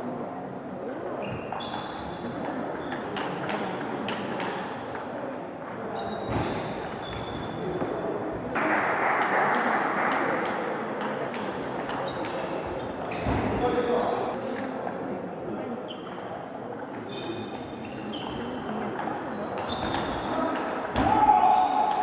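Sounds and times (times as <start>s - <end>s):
voices in a hall: 0.0s - 22.0s
shoe squeaks: 1.2s - 2.2s, 7.0s - 7.9s, 19.3s - 20.5s.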